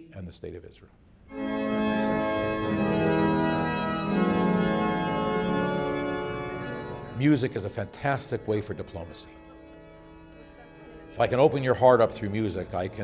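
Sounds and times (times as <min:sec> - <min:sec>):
organ playing sustained chords: 0:01.3 - 0:13.0.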